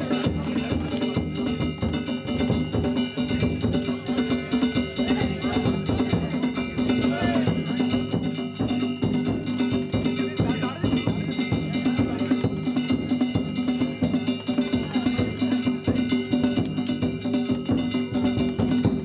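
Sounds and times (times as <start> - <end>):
rapid drum strokes: 0.0 - 19.0
small metal gongs ringing: 0.0 - 19.0.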